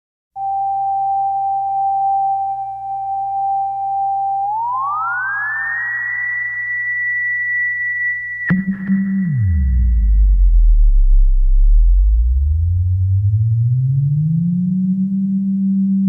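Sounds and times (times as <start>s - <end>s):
electronic tone sweeping upward: 4.3s - 16.0s.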